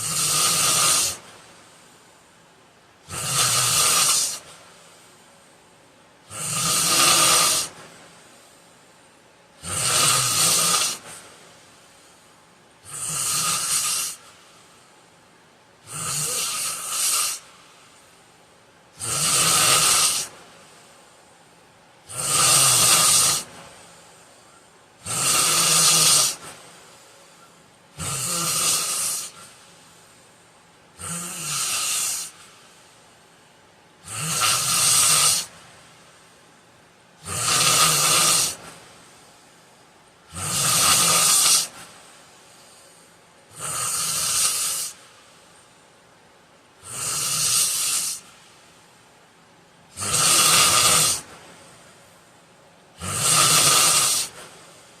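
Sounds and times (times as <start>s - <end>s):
man snoring: 0.0s - 1.3s, 3.0s - 4.6s, 6.2s - 7.8s, 9.6s - 11.1s, 12.8s - 14.2s, 15.8s - 17.5s, 19.0s - 20.4s, 22.1s - 23.6s, 25.0s - 26.5s, 28.0s - 29.6s, 31.0s - 32.4s, 34.0s - 35.6s, 37.2s - 38.7s, 40.3s - 41.8s, 43.5s - 45.0s, 46.8s - 48.2s, 49.9s - 51.3s, 53.0s - 54.4s.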